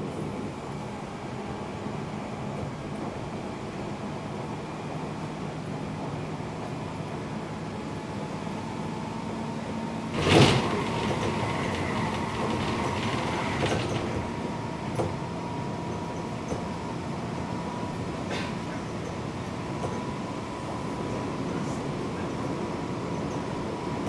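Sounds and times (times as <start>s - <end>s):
electric train running: 10.0s - 16.6s.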